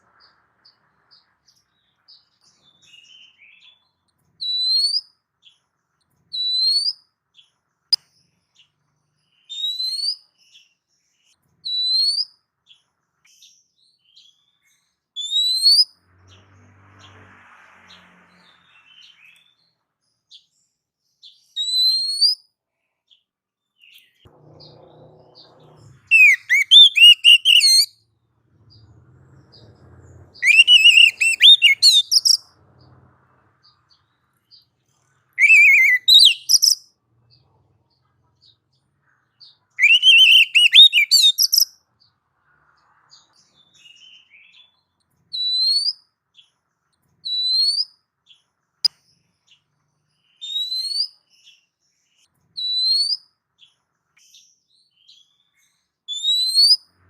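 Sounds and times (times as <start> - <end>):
bird whistling rising notes: 15.2 - 15.9, 24.5 - 27.9, 28.6 - 32.6, 35.4 - 36.8, 39.8 - 41.6, 56.1 - 56.8.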